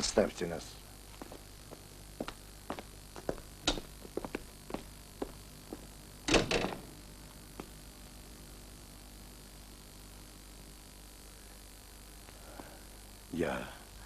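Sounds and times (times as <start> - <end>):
footsteps on hard floor: 1.1 - 5.9
door shutting: 6.3 - 6.9.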